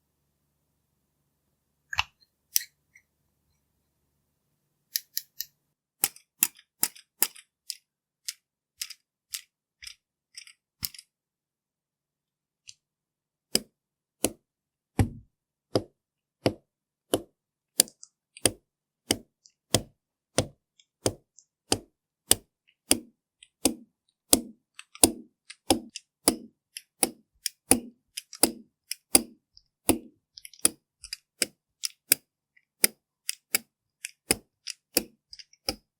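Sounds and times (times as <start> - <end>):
makeup tools tapping and clicking: 15.0 - 32.2.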